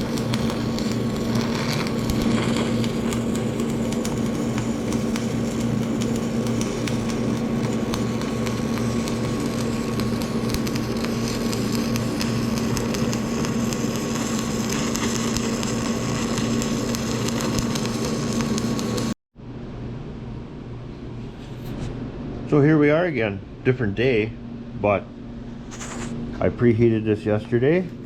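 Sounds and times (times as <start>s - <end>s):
welding arc crackling and hissing: 0.0s - 19.2s
low hum: 0.0s - 26.5s.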